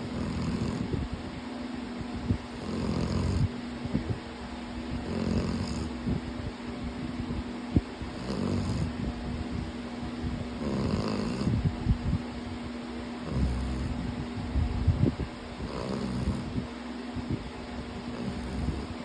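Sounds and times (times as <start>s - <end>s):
person snoring: 0.0s - 0.9s, 2.6s - 3.5s, 5.0s - 5.9s, 8.2s - 8.9s, 10.6s - 11.6s, 13.2s - 14.0s, 15.6s - 16.5s, 18.1s - 18.9s
steady low hum: 0.0s - 19.0s.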